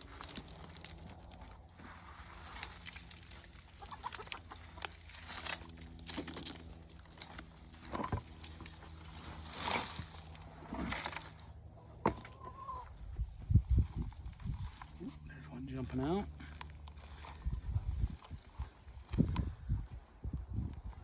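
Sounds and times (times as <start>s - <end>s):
rustling and scraping: 0.0s - 15.9s
chickens clucking: 2.0s - 5.7s, 11.8s - 13.2s.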